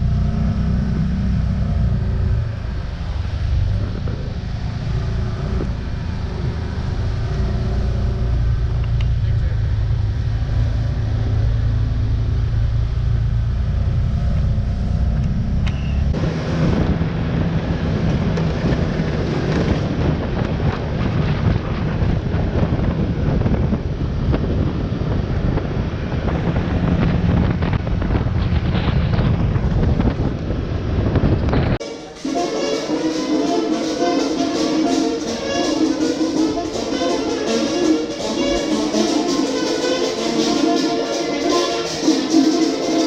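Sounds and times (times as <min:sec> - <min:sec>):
vehicle engine rumbling: 0:00.0 - 0:43.0
wind noise on microphone: 0:12.5 - 0:31.8.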